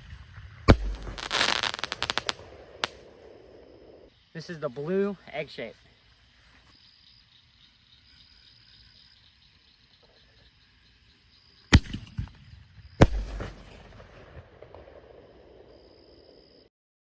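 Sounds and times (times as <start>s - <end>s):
firework launch bang: 0.0s - 4.0s, 11.7s - 15.7s
firework shell bursting: 0.0s - 4.1s, 11.6s - 14.8s.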